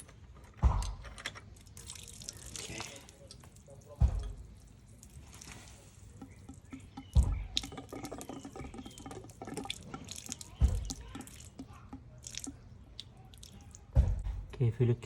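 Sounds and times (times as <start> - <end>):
metal fitting clicks and scrapes: 0.0 - 1.8
water dripping and trickling: 0.0 - 15.0.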